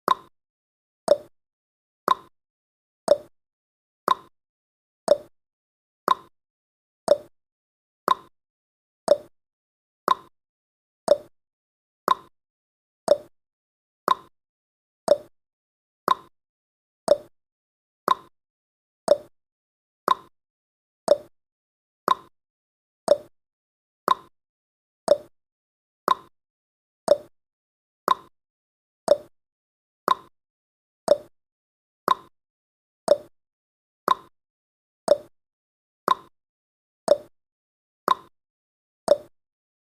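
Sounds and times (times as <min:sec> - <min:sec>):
clock ticking: 0:01.1 - 0:01.3, 0:03.1 - 0:03.3, 0:05.1 - 0:05.3, 0:07.1 - 0:07.3, 0:09.1 - 0:09.3, 0:11.1 - 0:11.3, 0:13.1 - 0:13.3, 0:15.1 - 0:15.3, 0:19.1 - 0:19.3, 0:21.1 - 0:21.3, 0:29.1 - 0:29.3, 0:31.1 - 0:31.3, 0:33.1 - 0:33.3, 0:35.1 - 0:35.3, 0:37.1 - 0:37.3, 0:39.1 - 0:39.3.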